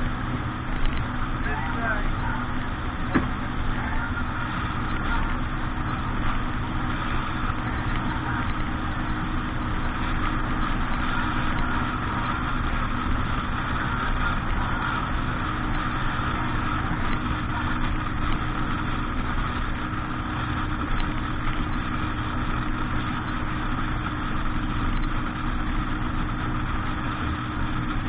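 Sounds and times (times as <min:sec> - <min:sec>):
boat engine running: 0:00.0 - 0:28.0.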